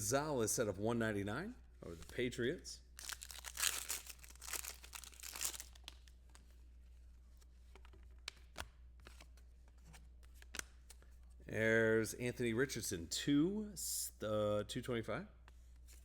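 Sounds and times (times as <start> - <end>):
foil wrapper tearing and crinkling: 3.0 - 6.1.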